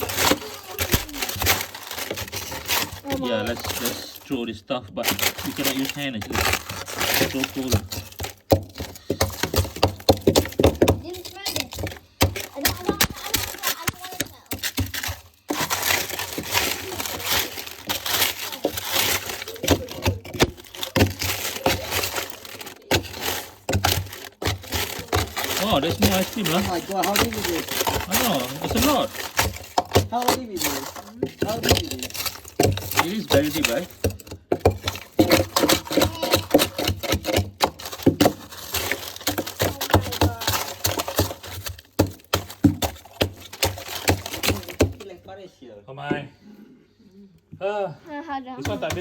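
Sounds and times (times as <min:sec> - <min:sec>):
frozen items knocking: 0:00.0 - 0:45.4, 0:48.5 - 0:49.0
ice and plastic crunching: 0:00.0 - 0:45.4, 0:48.4 - 0:49.0
background voices: 0:35.2 - 0:36.9.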